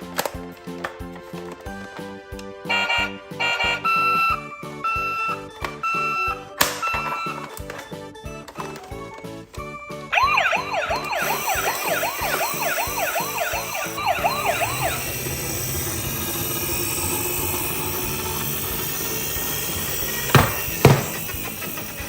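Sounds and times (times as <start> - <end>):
toy siren yelping: 2.7 - 7.7, 9.7 - 22.0.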